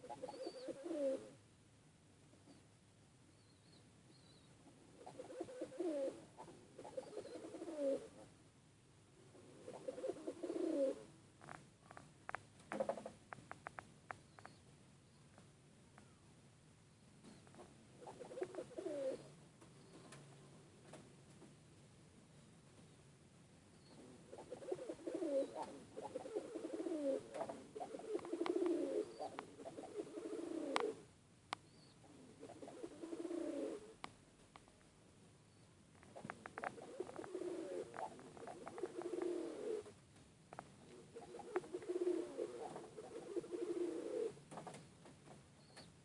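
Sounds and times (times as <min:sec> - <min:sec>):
pigeon cooing: 0:00.0 - 0:01.4, 0:04.8 - 0:08.3, 0:09.4 - 0:11.1, 0:17.5 - 0:20.2, 0:23.9 - 0:31.1, 0:31.8 - 0:34.0, 0:36.1 - 0:40.0, 0:40.8 - 0:44.4.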